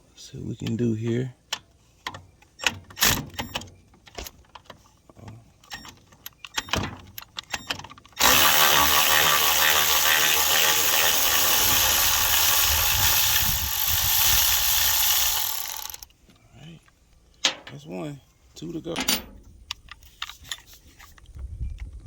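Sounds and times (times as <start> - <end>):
tools clicking and knocking: 5.6 - 12.0, 17.3 - 17.8, 19.0 - 21.2
power drill running: 8.2 - 16.1.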